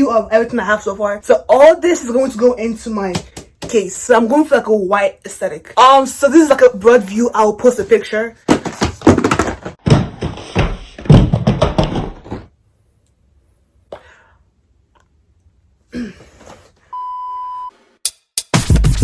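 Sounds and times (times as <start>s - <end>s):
objects knocking and thudding: 7.7s - 12.6s
electronic beep: 16.9s - 17.7s.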